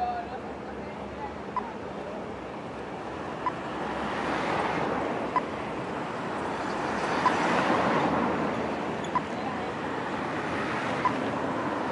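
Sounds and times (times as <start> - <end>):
street traffic noise: 0.0 - 11.9
crossing signal ticking beeps: 5.3 - 5.5.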